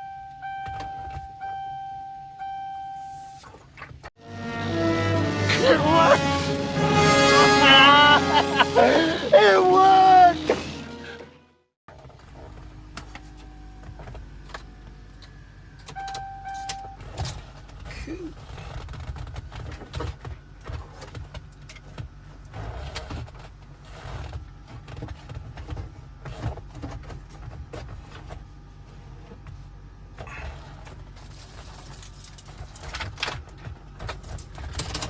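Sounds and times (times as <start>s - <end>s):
short beep: 0.0s - 3.5s, 16.0s - 17.0s.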